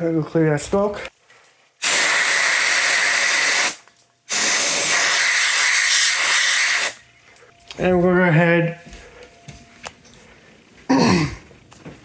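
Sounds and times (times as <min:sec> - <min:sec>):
compressed air spray hiss: 0:01.8 - 0:07.0.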